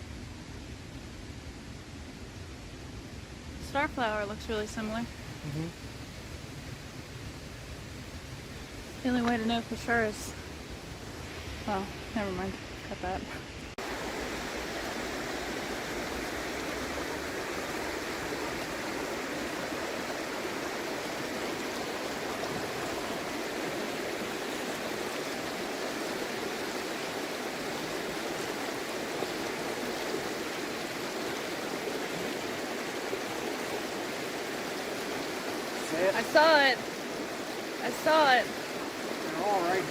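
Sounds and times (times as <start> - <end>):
creek water running: 2.0 - 39.9.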